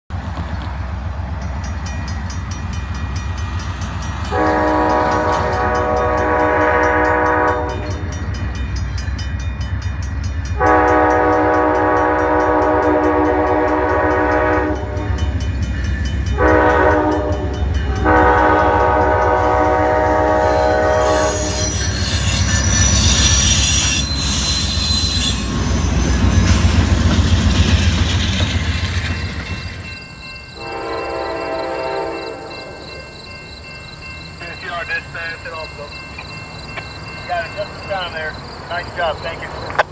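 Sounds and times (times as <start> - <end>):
low rumble of train: 0.1 - 39.9
train wheel and rail noise: 0.1 - 39.9
locomotive air horn blasts: 4.3 - 8.0, 10.6 - 15.3, 16.3 - 24.4, 30.6 - 32.8.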